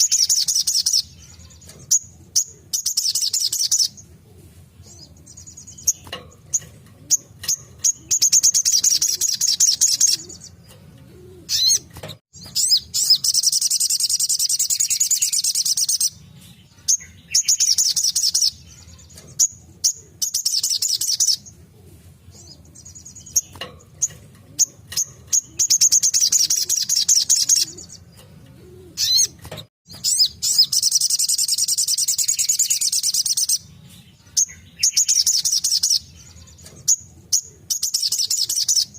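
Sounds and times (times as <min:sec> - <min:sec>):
bird shrill trilling song: 0:00.0 - 0:04.0, 0:11.5 - 0:11.8, 0:12.4 - 0:21.5, 0:29.0 - 0:38.9.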